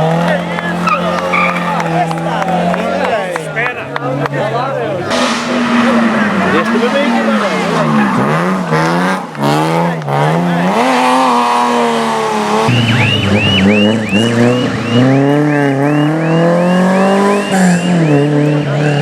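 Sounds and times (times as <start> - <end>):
rally car engine revving: 0.0 - 19.0
tyres squealing: 0.5 - 3.9.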